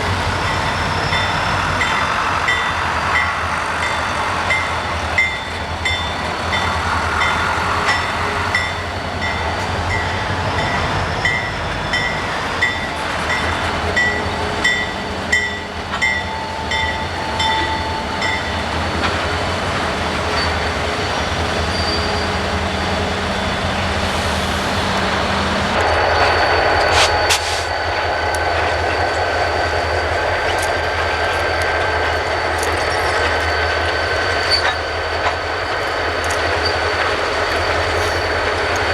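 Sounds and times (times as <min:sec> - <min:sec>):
train rumble: 0:00.0 - 0:38.9
train wheels clicking over rail joints: 0:00.0 - 0:38.9
high-pitched wheel squeal: 0:20.3 - 0:23.8, 0:25.8 - 0:38.8.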